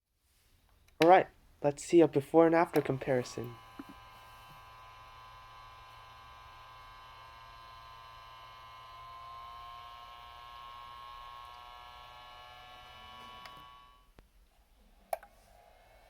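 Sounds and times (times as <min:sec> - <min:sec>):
cooling fan electric whine: 0:02.8 - 0:14.2.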